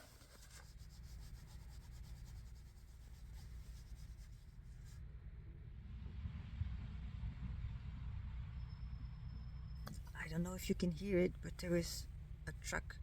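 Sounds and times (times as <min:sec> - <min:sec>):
pencil scratching on paper: 0:00.0 - 0:04.5.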